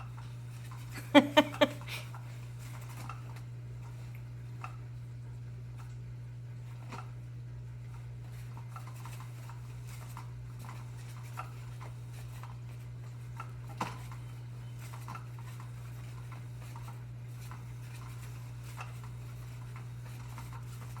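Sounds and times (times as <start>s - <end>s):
steady low hum: 0.0s - 13.5s.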